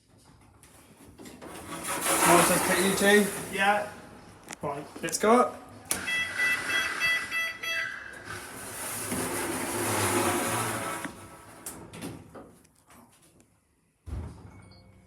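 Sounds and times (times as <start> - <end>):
lift doors sliding: 1.2 - 4.6, 5.2 - 12.3
rapid pulsing beep: 6.0 - 8.1.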